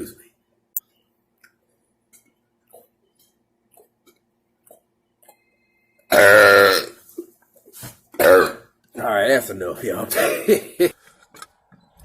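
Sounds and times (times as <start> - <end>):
man burping: 6.1 - 7.0, 8.2 - 8.7, 10.1 - 11.0.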